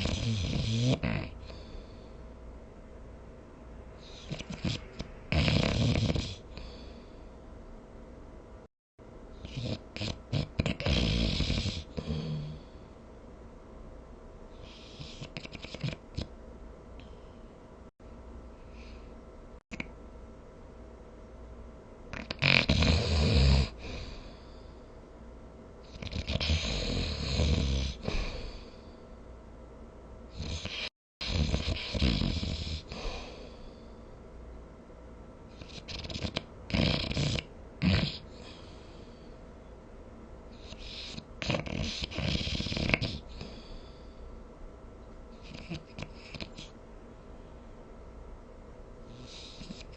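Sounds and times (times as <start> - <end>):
person snoring: 0.0 - 2.1, 4.0 - 7.1, 9.4 - 12.8, 22.1 - 24.5, 25.9 - 28.9, 30.4 - 33.8, 35.6 - 38.9, 40.6 - 44.1
fluttering clicks in snore: 15.2 - 16.3.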